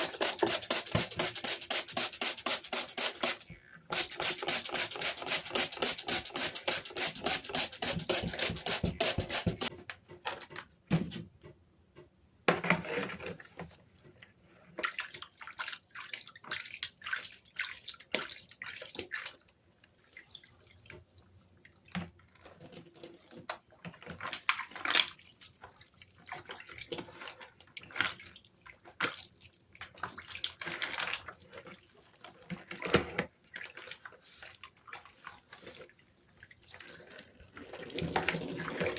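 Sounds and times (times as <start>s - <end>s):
scrubbing keyboard: 0.0s - 9.7s.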